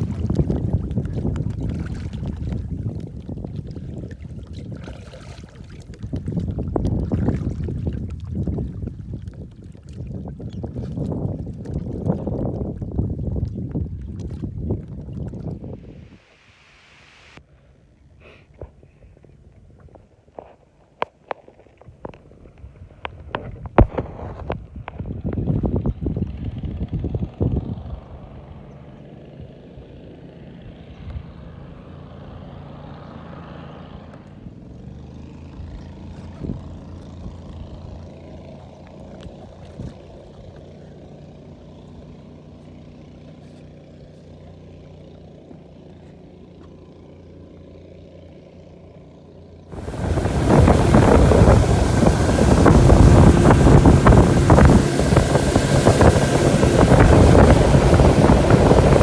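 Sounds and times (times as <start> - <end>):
boat motor running: 0.0 - 15.4, 34.1 - 59.0
wind buffeting microphone: 0.0 - 16.1, 22.7 - 28.6, 49.7 - 59.0.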